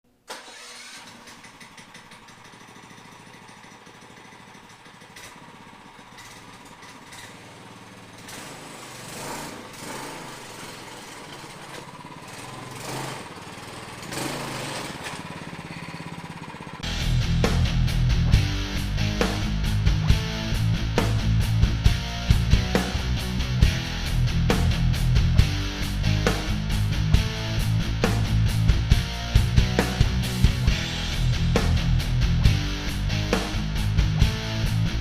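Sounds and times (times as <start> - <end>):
go-kart engine running: 0.3 - 17.0.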